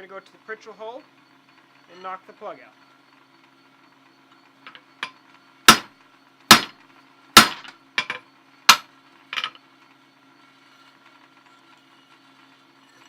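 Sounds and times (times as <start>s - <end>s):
hammer striking steel punch: 5.7s - 5.9s, 6.5s - 6.8s, 7.4s - 8.9s.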